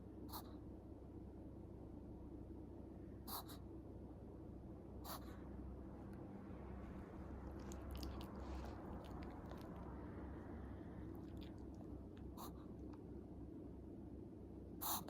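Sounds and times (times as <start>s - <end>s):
dog mouth clicking noises: 7.5s - 10.0s.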